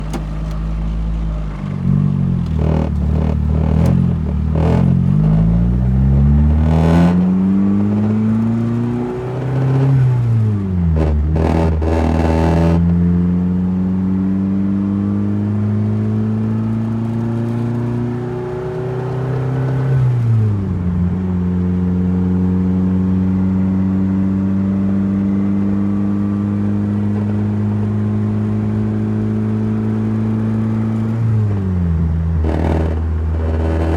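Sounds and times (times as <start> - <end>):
car engine revving with rattle: 0.0 - 33.9.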